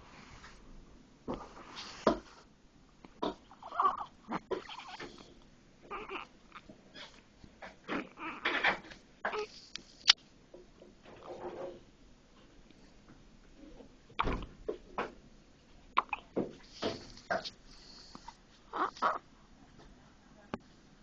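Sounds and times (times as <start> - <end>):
newborn baby whimpering and grunting: 3.2 - 5.2, 5.8 - 9.6, 16.0 - 17.5, 18.1 - 19.3.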